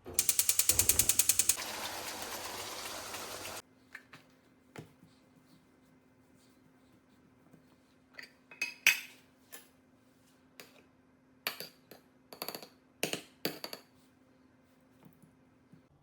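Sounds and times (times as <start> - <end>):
dishes and cutlery clinking: 8.2 - 9.7.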